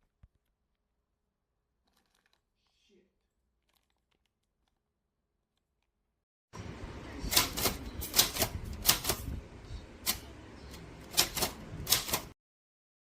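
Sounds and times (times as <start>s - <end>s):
low background noise: 6.6s - 12.3s
typewriter key strikes: 7.3s - 9.3s, 10.0s - 12.3s.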